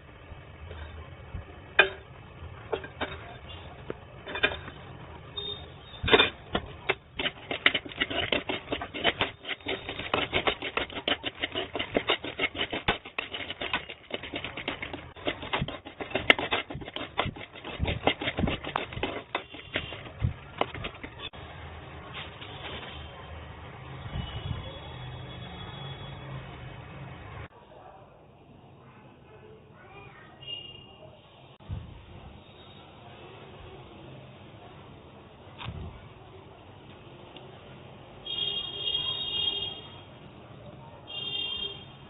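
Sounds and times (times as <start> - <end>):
puffed seeds rattling while stirred: 6.1 - 21.4.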